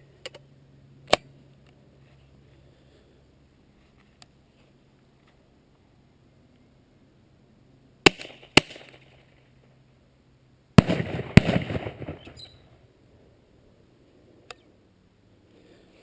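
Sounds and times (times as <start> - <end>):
shotgun bangs: 10.8 - 12.6.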